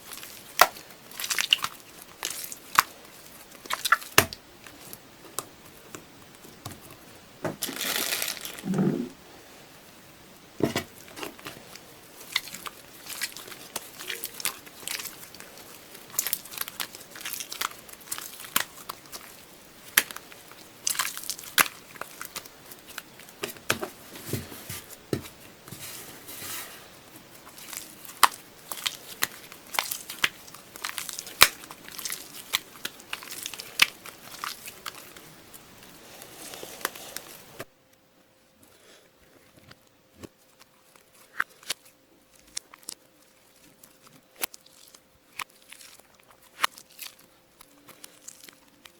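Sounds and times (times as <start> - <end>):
faint steady hum: 0.0 - 48.9
slime squishing and popping: 3.6 - 4.4, 16.0 - 23.0, 27.5 - 35.2.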